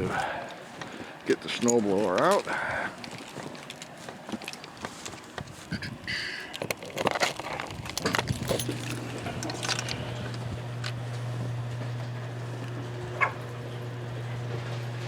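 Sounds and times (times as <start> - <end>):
garage door opener motor hum: 8.0 - 15.0.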